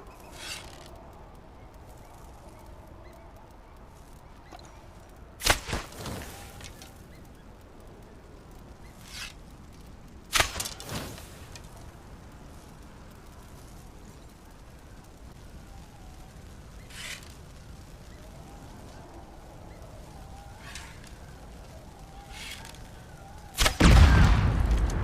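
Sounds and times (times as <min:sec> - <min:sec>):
bow shot snap: 0:05.4 - 0:06.9, 0:23.5 - 0:25.0.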